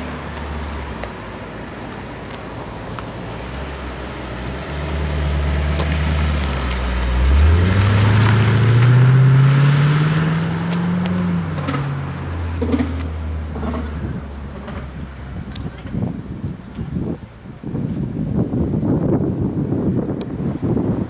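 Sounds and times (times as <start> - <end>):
car engine revving: 2.8 - 15.9.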